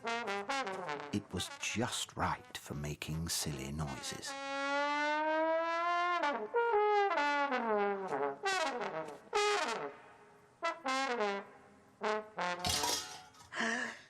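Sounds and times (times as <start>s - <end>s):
trombone sliding notes: 0.0s - 2.4s.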